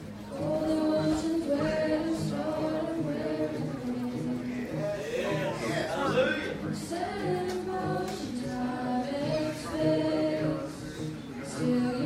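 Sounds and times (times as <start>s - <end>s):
group singing worship song: 0.4s - 4.1s, 6.5s - 12.0s.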